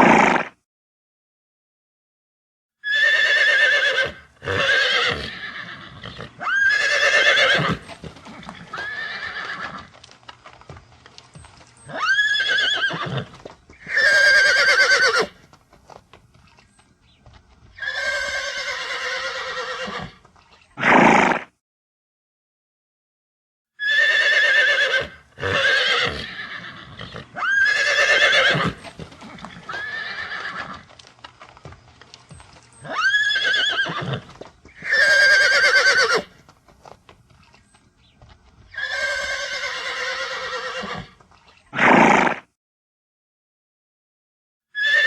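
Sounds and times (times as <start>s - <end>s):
horses neighing: 0.0s - 0.5s, 2.8s - 15.5s, 17.5s - 21.5s, 23.8s - 36.5s, 37.4s - 42.4s, 44.8s - 45.0s.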